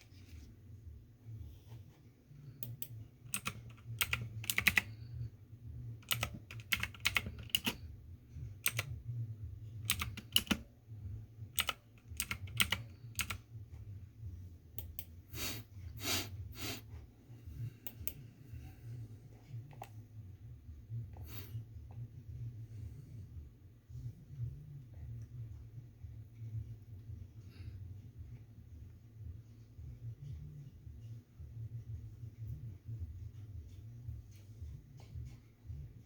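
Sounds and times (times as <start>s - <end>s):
low steady hum: 0.0s - 36.0s
keyboard key clicks: 6.0s - 7.8s.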